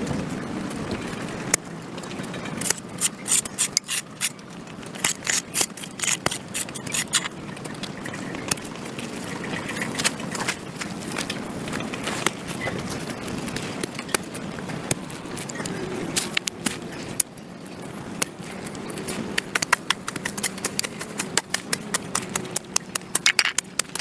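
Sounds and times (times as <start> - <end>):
hand tool scraping concrete: 2.6 - 4.4, 5.0 - 7.3.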